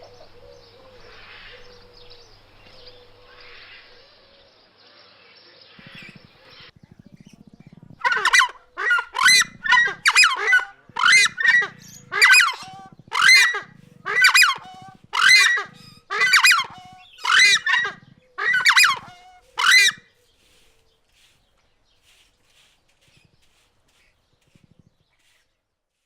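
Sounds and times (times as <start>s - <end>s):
goose honking: 8.0s - 20.0s.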